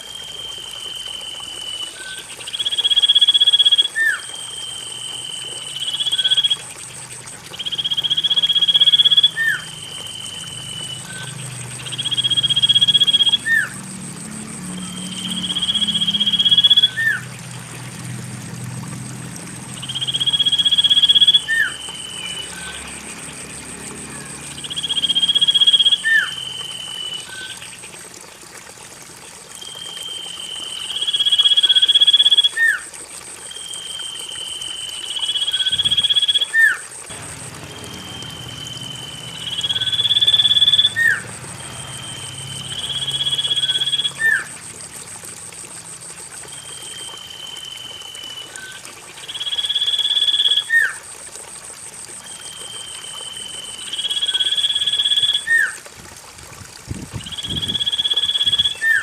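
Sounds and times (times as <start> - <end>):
bird whistling call: 0.1 - 6.6, 7.6 - 13.8, 14.8 - 17.2, 19.8 - 22.8, 24.2 - 27.6, 37.5 - 44.5, 57.2 - 59.0
thin high tone: 19.8 - 27.6, 37.1 - 45.3.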